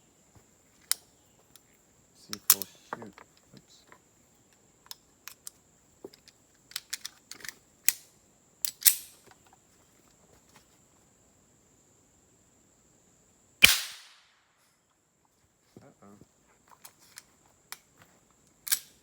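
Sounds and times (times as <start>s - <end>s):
pistol metallic clicks: 2.3s - 2.7s, 6.7s - 9.2s, 13.6s - 14.3s, 18.7s - 19.0s
gunshot: 13.6s - 14.3s.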